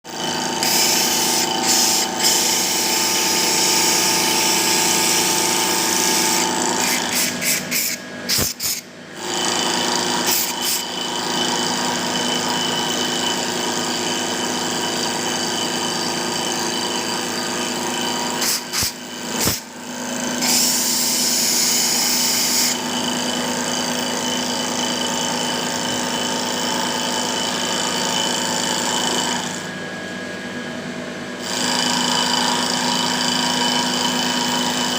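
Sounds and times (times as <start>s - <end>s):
lathe motor whine: 0.1s - 8.4s, 9.1s - 34.9s
cutting tool hissing on wood: 0.4s - 8.9s, 18.4s - 19.7s, 20.4s - 22.9s.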